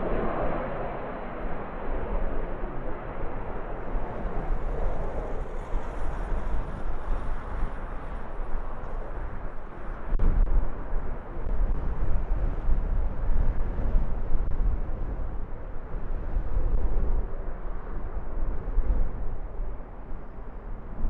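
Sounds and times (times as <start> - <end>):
jet engines taking off: 0.0 - 13.2
wind rumbling on microphone: 0.0 - 21.0.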